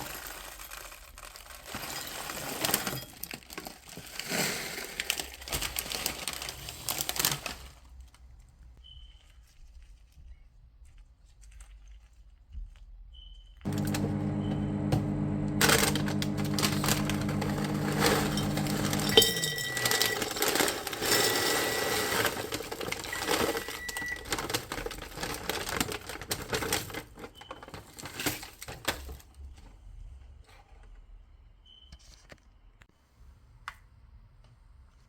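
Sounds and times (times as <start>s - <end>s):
objects clattering: 13.7s - 29.2s.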